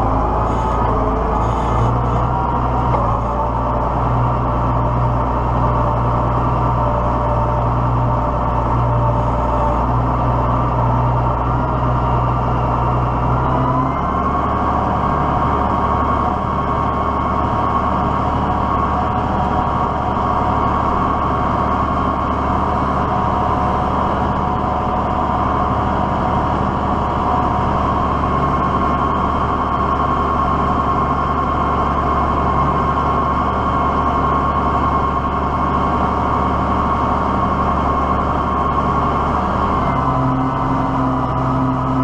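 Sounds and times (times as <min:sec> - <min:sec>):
diesel tractor engine running: 0:00.0 - 0:42.0.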